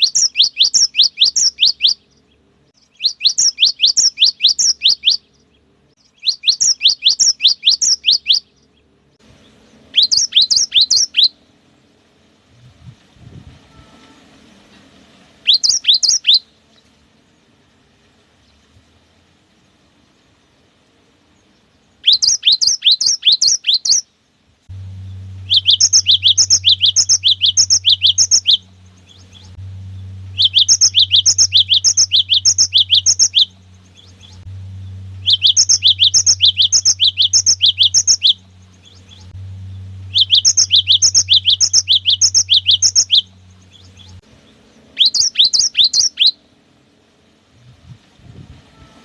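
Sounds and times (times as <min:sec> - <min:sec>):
bird singing: 0:00.0 - 0:12.0, 0:15.4 - 0:17.5, 0:21.3 - 0:47.7
steady low hum: 0:24.3 - 0:45.0.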